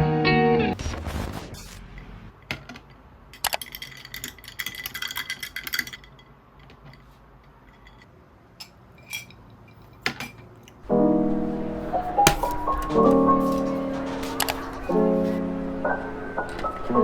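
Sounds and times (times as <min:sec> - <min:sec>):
small objects clinking and rattling: 0:03.4 - 0:07.0
small knocks: 0:10.9 - 0:17.0.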